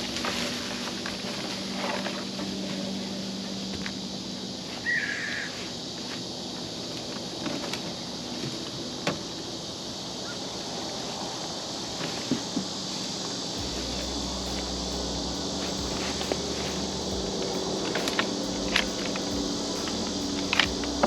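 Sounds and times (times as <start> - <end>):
insect drone: 0.0 - 21.0
low steady hum: 13.6 - 21.0.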